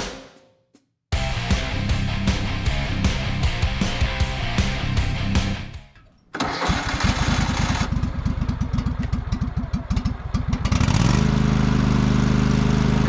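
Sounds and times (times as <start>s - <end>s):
lawn mower engine cranking and running: 6.3s - 8.0s.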